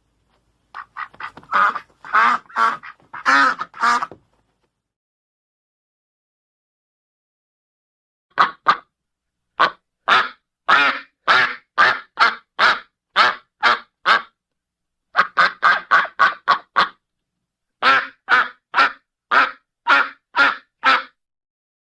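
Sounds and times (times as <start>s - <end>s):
duck quacking: 0.7s - 4.2s, 8.3s - 8.9s, 9.6s - 14.4s, 15.1s - 17.0s, 17.8s - 21.2s.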